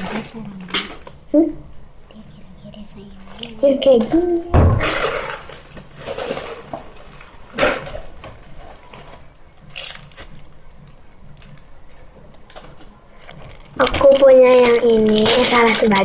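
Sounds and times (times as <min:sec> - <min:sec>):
squishy toys crinkly rustling: 0:05.5 - 0:16.0.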